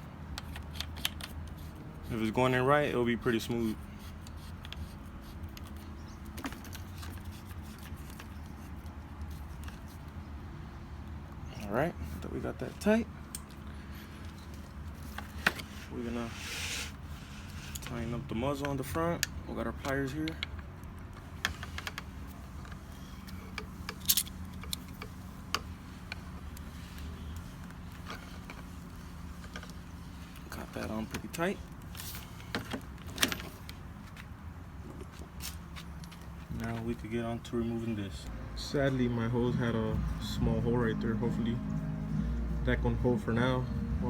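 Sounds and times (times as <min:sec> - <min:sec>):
pliers clicking and scraping: 0:00.3 - 0:01.8
hose fitting clicking and rubbing: 0:00.3 - 0:02.3, 0:03.5 - 0:10.2, 0:13.2 - 0:34.3
steady low hum: 0:20.4 - 0:44.0.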